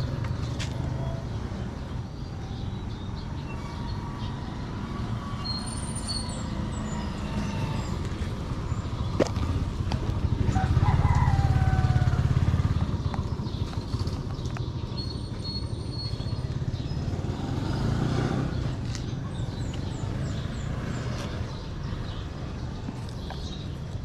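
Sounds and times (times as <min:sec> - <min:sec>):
vehicle engine running: 0:07.7 - 0:24.0.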